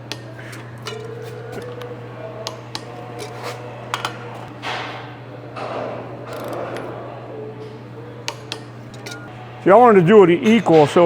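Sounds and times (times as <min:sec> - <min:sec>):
wrench scraping: 0:00.0 - 0:04.9, 0:06.2 - 0:07.0, 0:08.2 - 0:11.0
wrench metal clinks: 0:06.3 - 0:06.9, 0:08.4 - 0:09.3.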